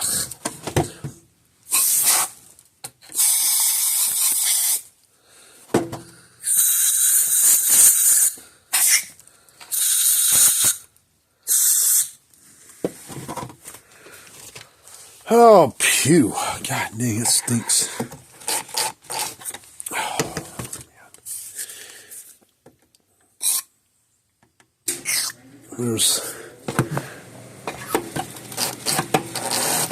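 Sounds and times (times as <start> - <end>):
compressed air hissing blasts: 1.7 - 2.4, 3.2 - 4.9, 6.4 - 9.1, 9.7 - 10.8, 11.5 - 12.2.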